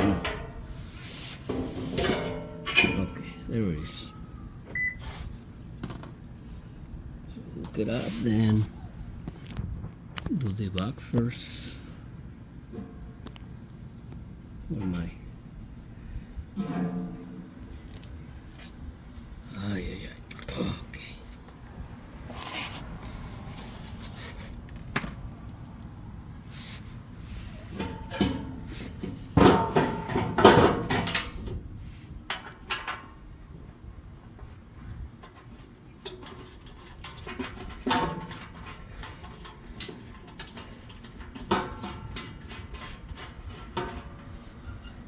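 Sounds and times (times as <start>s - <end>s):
metal skid plate clanking: 0.0s - 3.3s, 16.6s - 18.1s, 27.6s - 31.5s, 36.0s - 44.4s
loud metal clatter: 16.6s - 18.2s, 27.7s - 31.5s.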